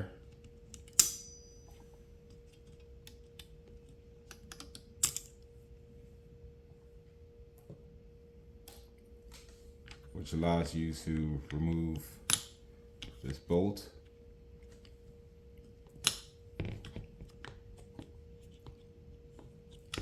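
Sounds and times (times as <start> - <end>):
faint steady hum: 0.0 - 20.0
sharp click with metallic ring: 0.7 - 1.9
small metal parts clicking: 4.3 - 5.4.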